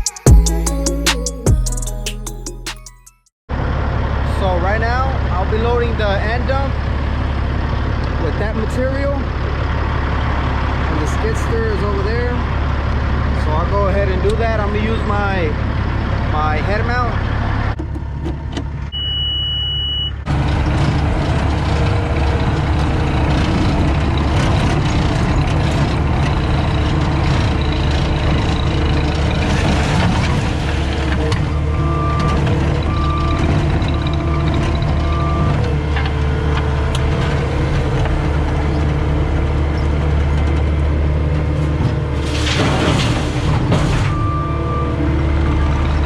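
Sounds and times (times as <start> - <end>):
diesel engine running under load: 3.5 - 19.2, 20.2 - 46.0
backup alarm beeping: 18.9 - 20.2
short high beep: 18.9 - 20.2.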